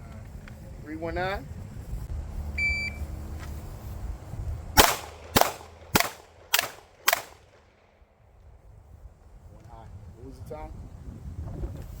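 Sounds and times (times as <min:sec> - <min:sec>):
pistol shots: 0:04.8 - 0:07.8.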